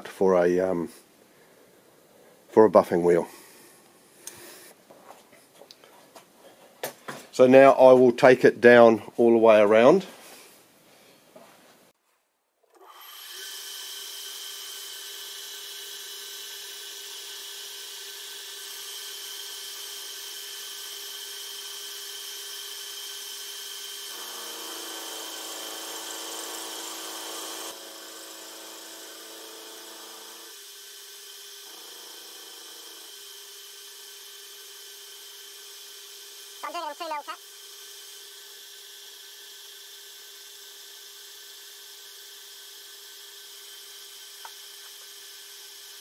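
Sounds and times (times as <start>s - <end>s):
milling machine whining: 12.8s - 46.0s.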